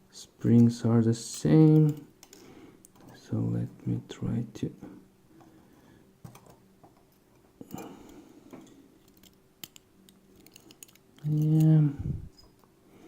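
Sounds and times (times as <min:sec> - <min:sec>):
small clicks of lock pins: 0:08.6 - 0:12.7.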